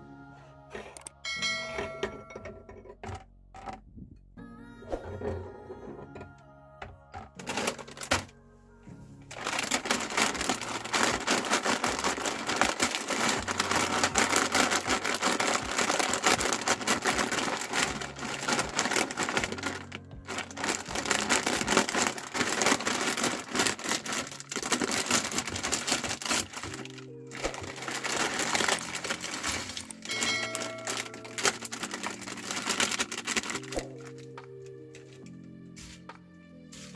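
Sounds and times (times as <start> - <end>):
background music: 0.0 - 36.9
meat grinder crunching: 9.3 - 34.0.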